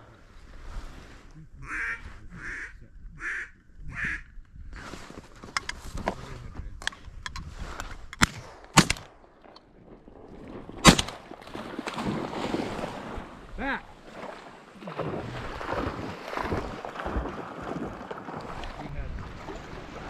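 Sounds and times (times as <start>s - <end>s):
duck quacking: 1.6s - 4.3s.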